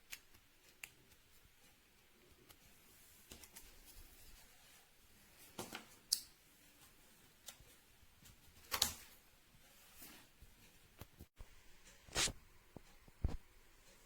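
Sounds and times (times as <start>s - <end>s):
short scraping sounds: 12.1s - 12.4s.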